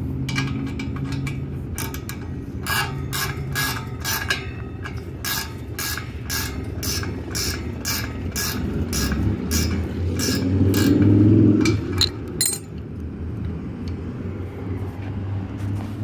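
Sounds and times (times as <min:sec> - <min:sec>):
ratchet wrench clicking: 0:01.0 - 0:12.8.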